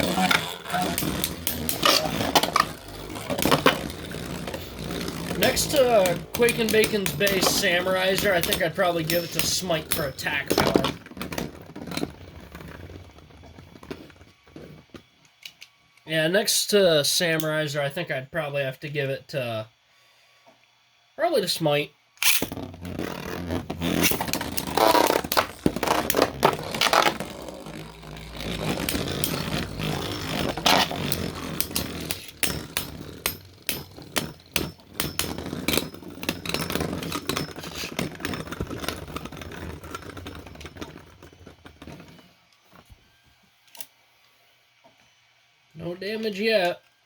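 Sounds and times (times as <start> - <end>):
plastic tops clacking together: 0.0 - 11.4
spinning tops whirring on floor: 0.0 - 15.7, 22.2 - 43.0.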